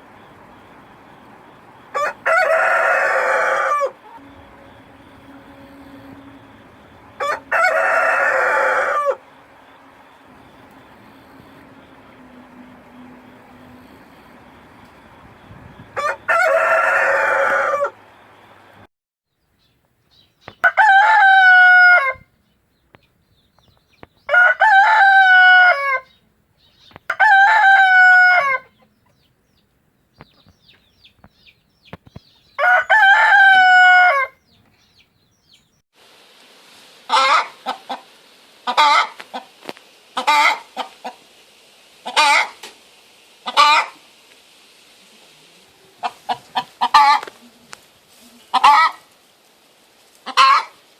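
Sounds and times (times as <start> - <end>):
rooster crowing: 1.9 - 13.9, 15.9 - 18.2, 20.6 - 22.3, 24.3 - 26.2, 27.1 - 28.8, 32.5 - 34.5, 37.1 - 38.0, 38.6 - 39.4, 40.2 - 41.2, 42.0 - 42.6, 43.4 - 44.0, 46.0 - 47.3, 48.5 - 49.1, 50.3 - 50.8
chicken clucking: 2.0 - 4.4, 37.1 - 39.6, 40.2 - 41.2, 42.0 - 42.7, 43.4 - 44.0, 45.8 - 47.7, 48.5 - 49.1, 50.2 - 50.8.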